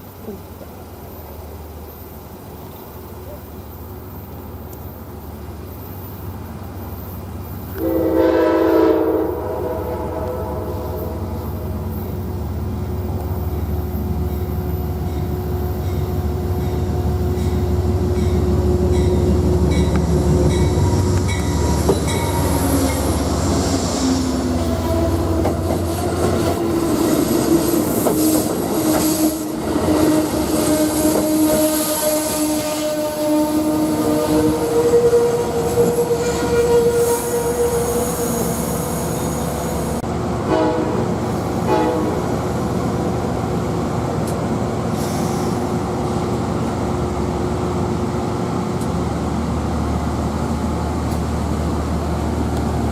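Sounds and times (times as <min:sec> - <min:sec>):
train rumbling by: 0:00.0 - 0:52.9
train wheels squealing: 0:13.4 - 0:29.4, 0:33.3 - 0:40.0.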